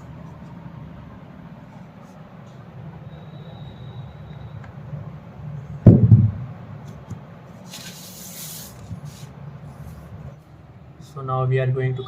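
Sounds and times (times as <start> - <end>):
steady low hum: 0.0 - 12.0
low thump: 5.8 - 6.5.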